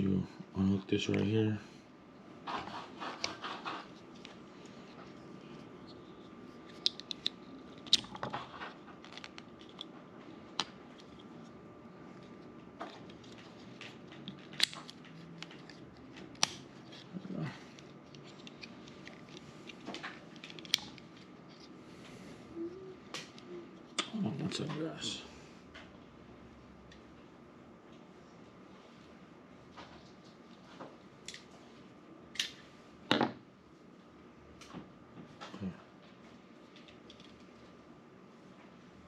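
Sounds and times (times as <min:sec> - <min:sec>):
fiddling and rubbing: 0:02.5 - 0:09.9.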